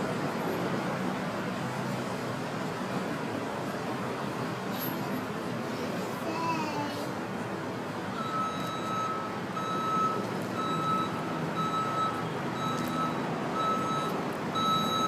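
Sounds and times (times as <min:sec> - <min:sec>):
backhoe engine running: 0:07.3 - 0:15.0
reversing alarm beeping: 0:08.2 - 0:15.0.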